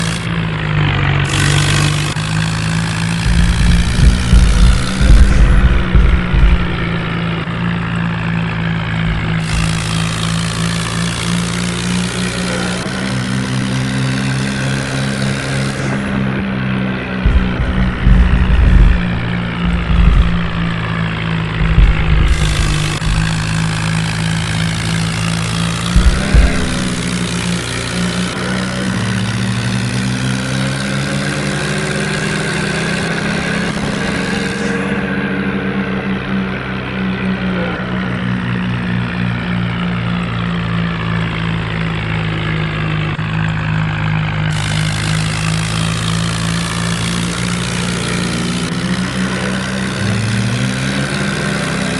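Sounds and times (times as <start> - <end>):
diesel engine running: 0.0 - 51.9
low thumps: 2.6 - 7.5, 8.7 - 10.7, 16.9 - 27.9.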